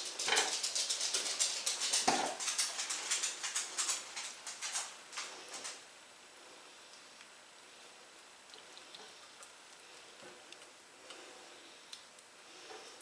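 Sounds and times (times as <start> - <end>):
light kitchen clicking and tapping: 0.0 - 5.8.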